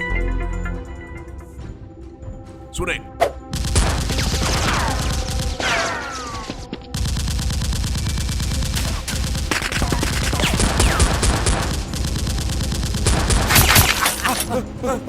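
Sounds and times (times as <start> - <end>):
rapid automatic gunfire: 7.0 - 13.9.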